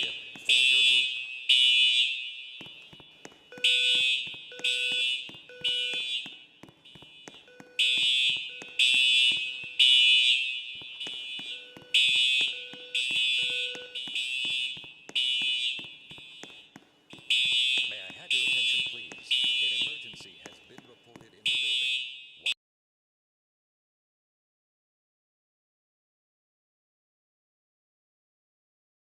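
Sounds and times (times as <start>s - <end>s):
fire alarm horn blasts: 0.0s - 22.6s.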